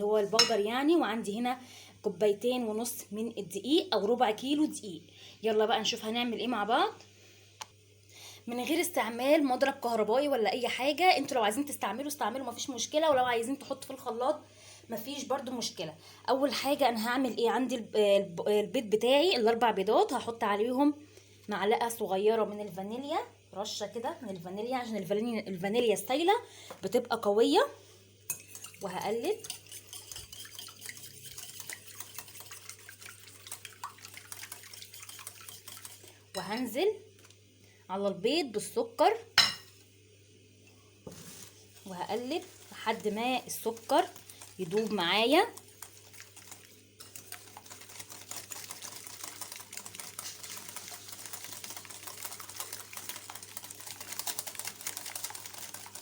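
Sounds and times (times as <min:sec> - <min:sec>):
eggs beaten by hand in bowl: 0:28.3 - 0:36.7, 0:41.8 - 0:56.0.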